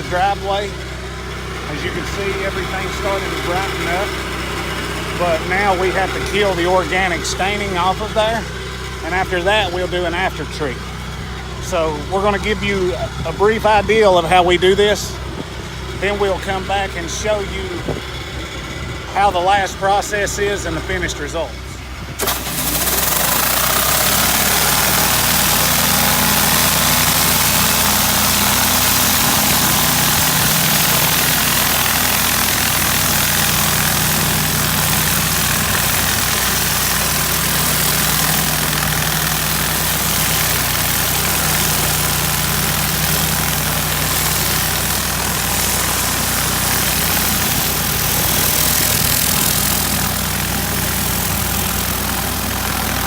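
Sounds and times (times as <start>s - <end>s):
high-pressure water spraying: 0.0s - 11.5s, 22.1s - 53.0s
pressure washer engine running: 0.0s - 53.0s.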